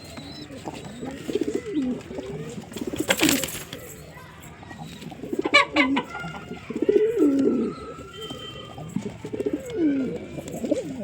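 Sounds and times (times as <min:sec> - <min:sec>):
pigeons cooing: 0:00.0 - 0:03.8, 0:04.8 - 0:11.0.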